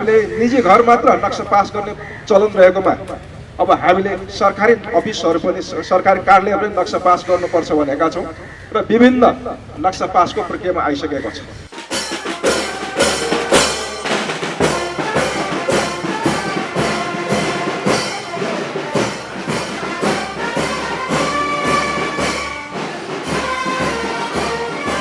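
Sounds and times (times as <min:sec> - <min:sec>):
steady percussive beat: 0:11.5 - 0:25.0
orchestral music with brass: 0:11.7 - 0:25.0.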